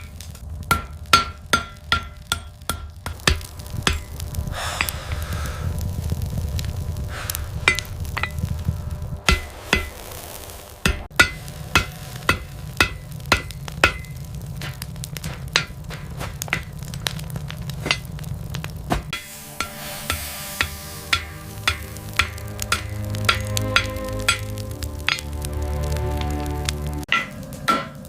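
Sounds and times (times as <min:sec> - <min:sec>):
hammer striking steel on anvil: 0:00.0 - 0:04.2, 0:07.7 - 0:08.4, 0:09.3 - 0:10.0, 0:10.8 - 0:14.2, 0:19.1 - 0:25.4, 0:27.1 - 0:28.0
continuous low rumble: 0:00.0 - 0:28.0.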